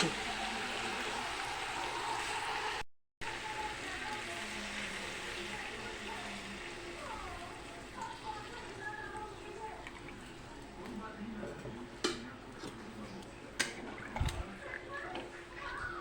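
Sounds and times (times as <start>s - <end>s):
water sizzling in hot pan: 0.0s - 10.4s.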